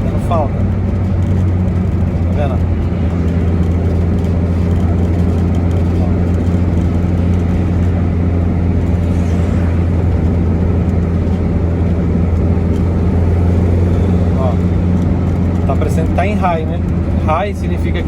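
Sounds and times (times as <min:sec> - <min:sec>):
car engine droning: 0:00.0 - 0:18.0
road noise: 0:00.0 - 0:18.0
man talking: 0:02.3 - 0:02.6, 0:14.3 - 0:14.7, 0:15.7 - 0:18.0.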